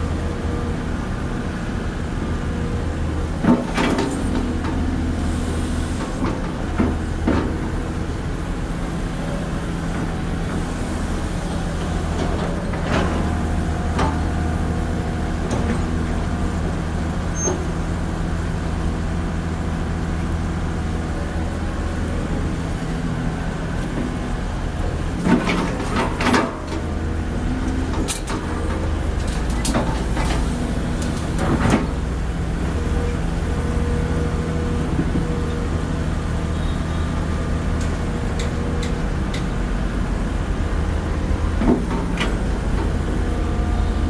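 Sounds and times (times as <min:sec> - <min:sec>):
excavator diesel engine running: 0:00.0 - 0:44.0.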